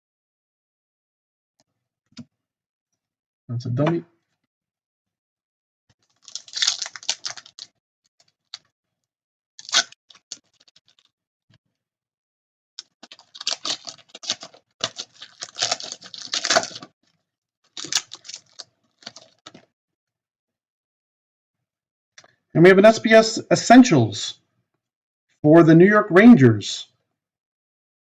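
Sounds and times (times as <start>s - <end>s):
foil wrapper crinkling and tearing: 6.0s - 7.8s, 9.6s - 11.1s, 12.8s - 17.0s, 17.7s - 19.6s.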